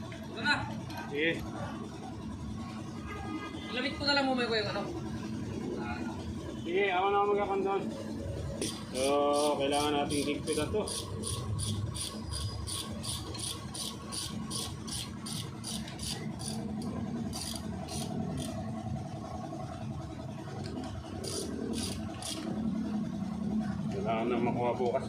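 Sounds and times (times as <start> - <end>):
ratchet wrench clicking: 8.6 - 18.6, 21.2 - 22.6.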